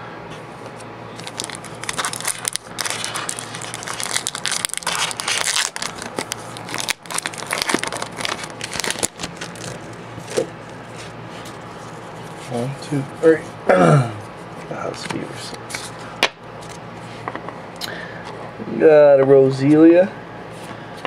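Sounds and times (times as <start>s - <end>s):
foil wrapper crinkling: 1.2s - 10.5s
wrapper tearing: 1.2s - 10.5s.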